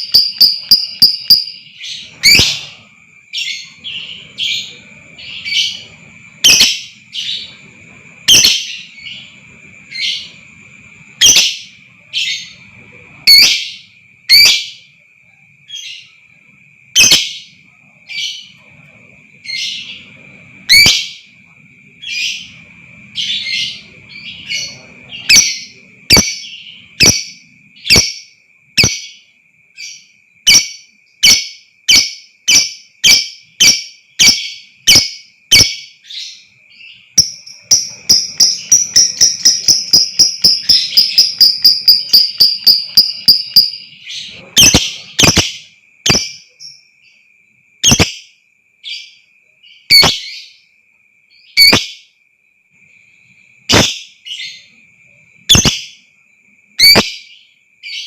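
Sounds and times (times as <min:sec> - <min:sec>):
high ringing tone: 0:00.0 - 0:01.8, 0:37.1 - 0:44.0
lovebird chirping: 0:00.0 - 0:15.0, 0:15.6 - 0:47.2, 0:47.8 - 0:50.6, 0:51.3 - 0:52.1, 0:53.3 - 0:56.1, 0:56.8 - 0:58.0.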